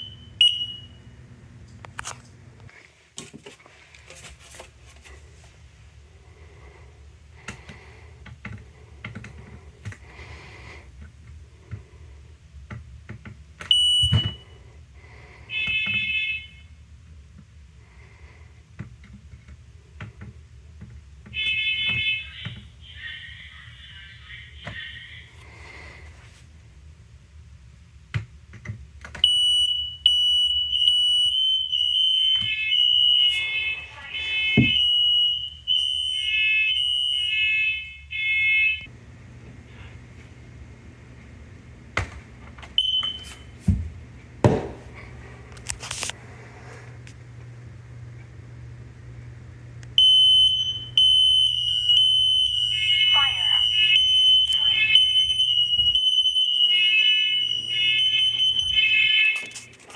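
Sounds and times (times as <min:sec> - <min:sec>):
smoke alarms sounding: 0:00.0 - 0:01.4, 0:13.7 - 0:14.6, 0:15.5 - 0:16.8, 0:21.3 - 0:24.3, 0:29.2 - 0:39.0, 0:42.6 - 0:45.0, 0:49.9 - 0:59.9
steady low hum: 0:00.0 - 0:15.5, 0:38.8 - 0:59.9
sharp knocks: 0:44.5 - 0:45.0.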